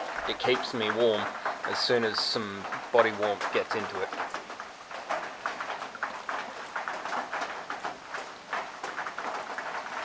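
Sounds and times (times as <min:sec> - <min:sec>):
rain falling: 0:00.0 - 0:10.0.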